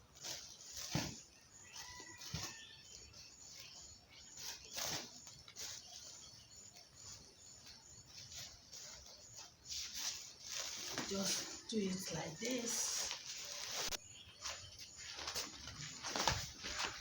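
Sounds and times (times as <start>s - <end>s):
bird calls: 0.0s - 17.0s
soft knocks and rustles: 13.8s - 17.0s.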